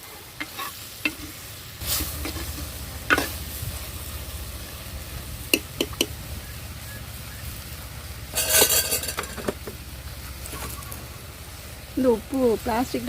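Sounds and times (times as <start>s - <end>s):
fish sizzling in oil: 0.0s - 13.0s
ladle knocking against pan: 5.5s - 6.2s.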